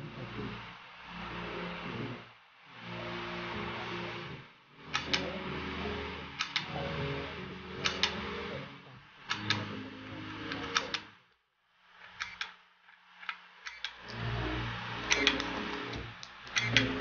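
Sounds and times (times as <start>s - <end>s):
hard drive motor hum: 0.0s - 11.3s, 13.2s - 17.0s
hard drive clicking: 4.8s - 11.2s, 12.1s - 12.6s, 13.2s - 17.0s.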